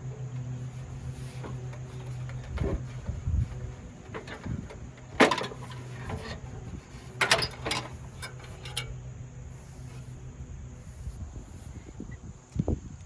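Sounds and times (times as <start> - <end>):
car trim parts knocking and clacking: 0.0 - 10.1
steady low hum: 0.0 - 12.6.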